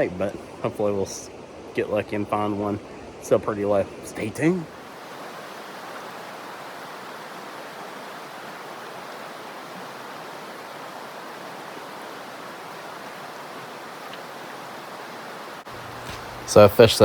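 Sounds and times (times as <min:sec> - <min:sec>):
river water rushing over shoal: 0:04.1 - 0:17.0.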